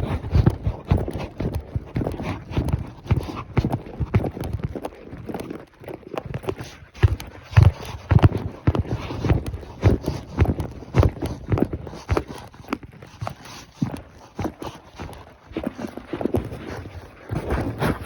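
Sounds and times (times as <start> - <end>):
horse hooves clip-clopping: 0.0 - 18.0.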